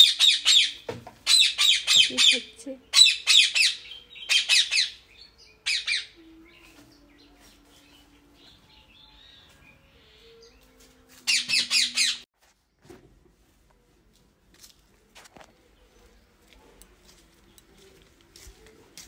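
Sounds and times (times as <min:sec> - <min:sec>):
parrot squawking: 0:00.0 - 0:05.0, 0:05.6 - 0:06.2, 0:11.3 - 0:12.2.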